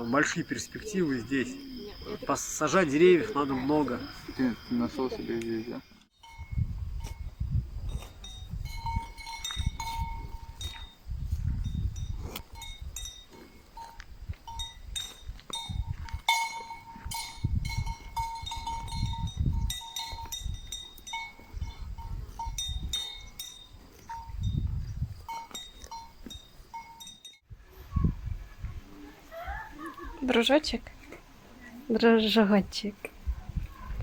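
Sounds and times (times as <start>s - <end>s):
small bell clinking: 6.2s - 7.3s, 7.9s - 11.0s, 11.6s - 27.4s
low rumbling gusts: 6.3s - 13.1s, 17.1s - 20.8s, 27.5s - 28.9s.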